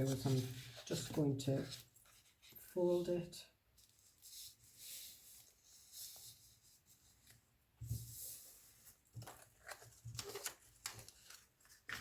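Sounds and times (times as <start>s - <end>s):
paper rustling and creasing: 0.0s - 2.9s, 3.7s - 12.0s.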